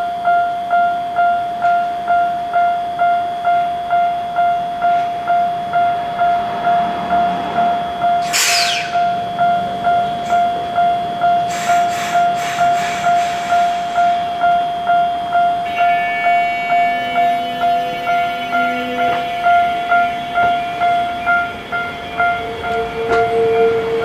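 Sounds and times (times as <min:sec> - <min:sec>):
level-crossing warning bell: 0:00.0 - 0:24.0
subway train passing: 0:00.0 - 0:24.0
brief hiss: 0:08.2 - 0:09.0
wheels clacking over rail joints: 0:18.5 - 0:24.0.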